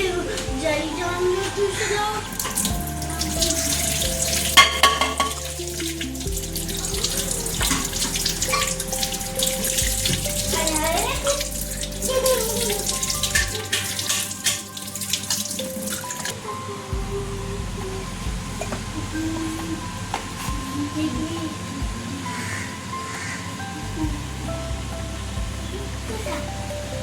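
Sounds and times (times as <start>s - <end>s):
background music: 0.0s - 27.0s
water running from a tap: 1.9s - 16.3s.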